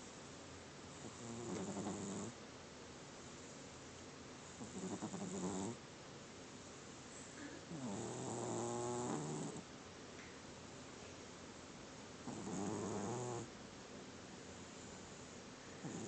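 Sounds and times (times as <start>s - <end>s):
cat snoring: 1.0s - 2.4s, 4.6s - 5.8s, 7.7s - 9.6s, 12.2s - 13.5s.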